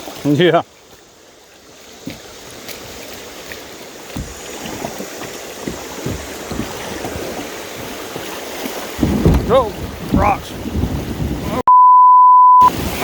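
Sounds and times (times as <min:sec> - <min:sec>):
creek water rushing and splashing: 0:00.0 - 0:11.6, 0:12.7 - 0:13.0
low thumps: 0:09.0 - 0:11.6.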